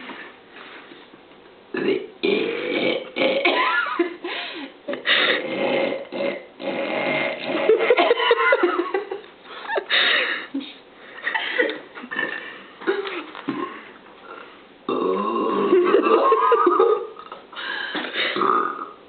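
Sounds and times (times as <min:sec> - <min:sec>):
woman belching: 0:01.7 - 0:03.8, 0:12.1 - 0:12.6, 0:14.9 - 0:17.4, 0:18.3 - 0:19.0.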